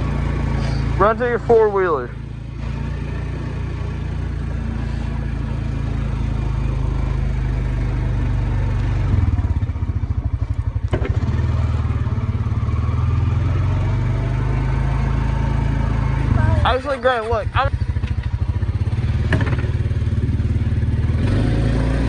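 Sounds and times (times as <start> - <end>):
atv engine running: 0.0 - 22.0.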